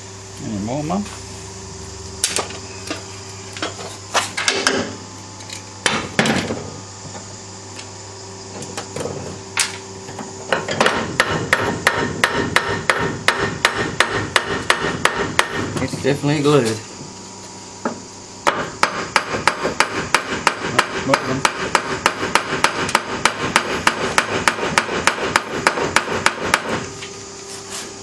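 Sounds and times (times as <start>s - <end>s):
hammer knocking on metal part: 10.5s - 15.8s, 18.4s - 26.8s.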